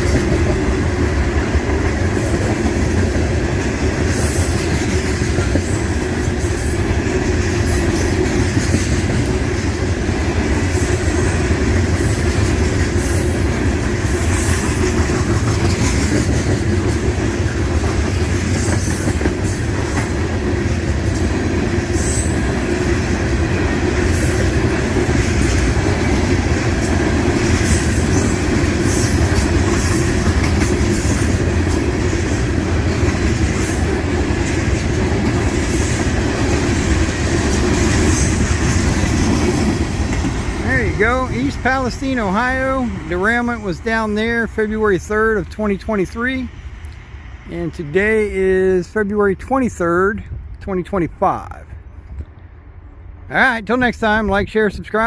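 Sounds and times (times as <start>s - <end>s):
wheels clattering over rail joints: 0.0s - 41.0s
freight train rumbling past: 0.0s - 55.0s.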